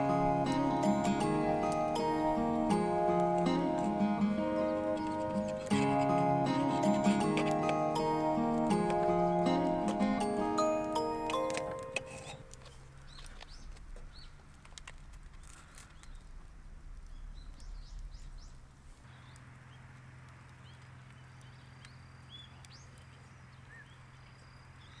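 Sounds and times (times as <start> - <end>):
low outdoor background: 0.0 - 25.0
small clicks: 9.7 - 16.4
faint bird chirps: 17.0 - 19.8.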